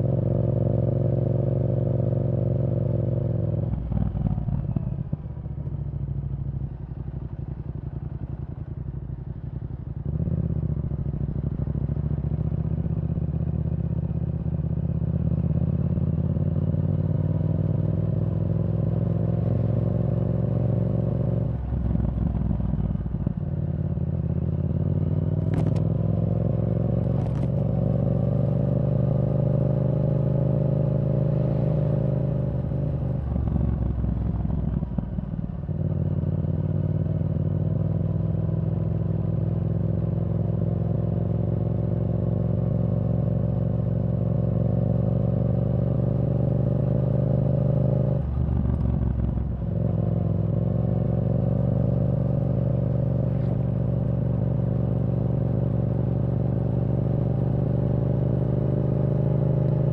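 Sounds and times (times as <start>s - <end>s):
motorcycle engine while riding: 0.0s - 59.9s.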